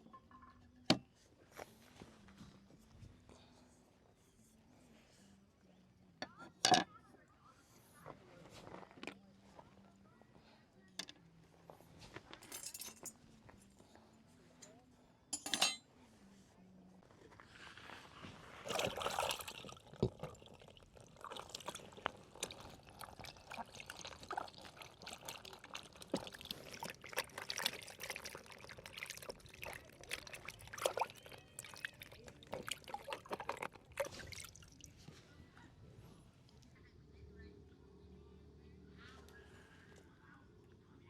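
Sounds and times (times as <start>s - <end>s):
liquid pouring and trickling: 18.4s - 35.1s.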